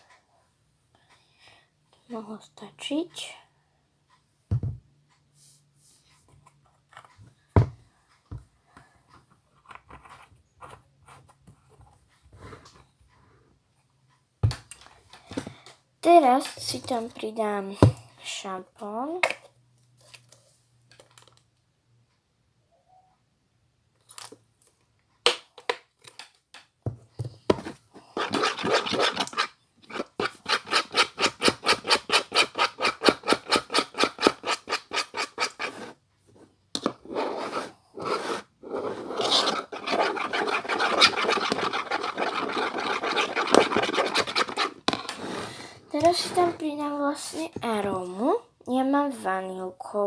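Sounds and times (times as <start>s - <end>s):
utensil scraping a bowl: 28.0s - 36.0s, 36.8s - 47.5s.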